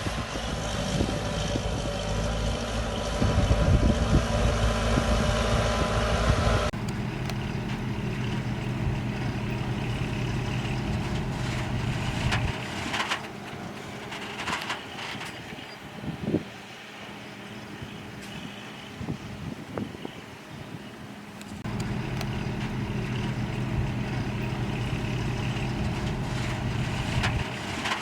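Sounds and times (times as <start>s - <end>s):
diesel engine running: 0.0s - 28.0s
engine knocks: 6.6s - 18.5s, 21.2s - 28.0s
metal clanks: 6.8s - 15.9s, 21.6s - 28.0s.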